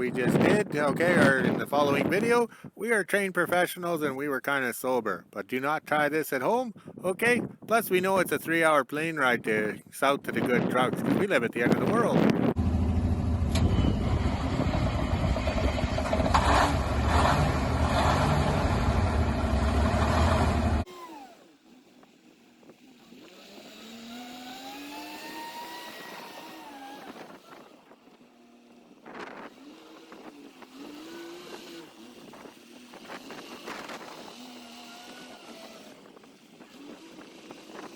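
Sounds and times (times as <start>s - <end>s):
wind noise on microphone: 0.0s - 2.9s, 6.5s - 19.0s, 21.9s - 37.9s
truck engine revving: 12.4s - 21.4s, 22.6s - 37.9s.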